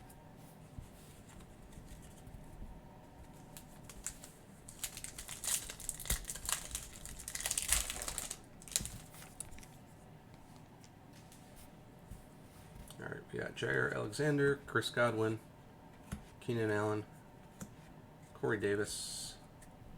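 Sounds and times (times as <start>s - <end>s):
foil wrapper crinkling and tearing: 3.5s - 9.8s.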